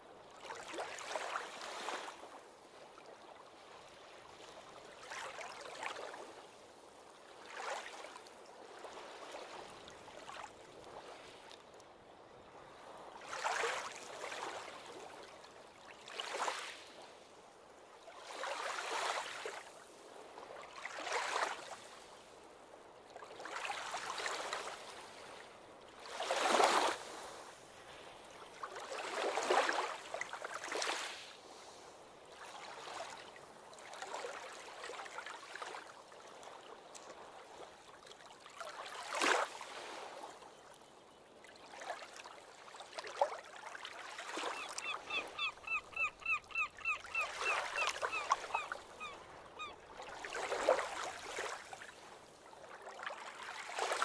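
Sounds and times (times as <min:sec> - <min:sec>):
ocean waves breaking on beach: 0:00.3 - 0:11.4, 0:12.1 - 0:17.4, 0:18.0 - 0:37.8, 0:38.5 - 0:40.4, 0:41.8 - 0:54.0.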